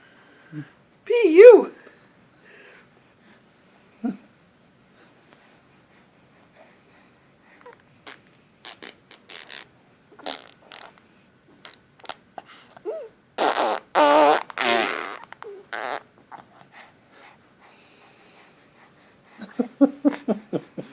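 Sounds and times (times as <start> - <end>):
mouth fart noises: 8.0 - 11.0, 11.6 - 12.2, 13.4 - 16.1.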